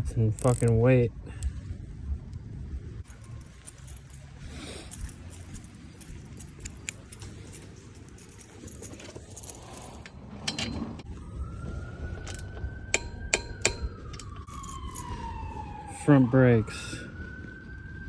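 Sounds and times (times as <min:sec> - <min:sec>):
small metal objects rattling: 0:03.1 - 0:10.7.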